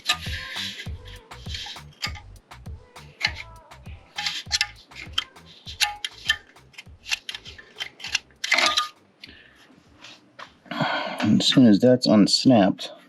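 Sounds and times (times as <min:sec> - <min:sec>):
metal tools clicking and scraping: 0:04.2 - 0:09.0.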